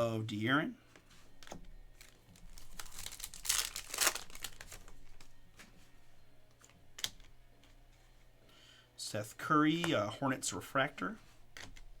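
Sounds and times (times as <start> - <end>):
plastic wrapper tearing and crinkling: 2.0 - 4.9.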